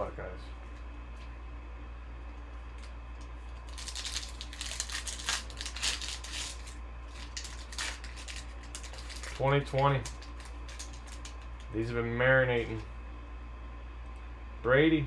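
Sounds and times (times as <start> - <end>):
steady low hum: 0.0 - 15.0
plastic wrapper crinkling and tearing: 2.6 - 11.7.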